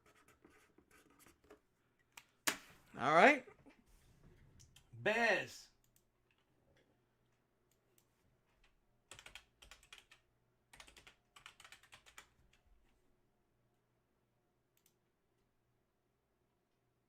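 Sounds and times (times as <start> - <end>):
typing on computer keyboard: 8.6 - 12.6.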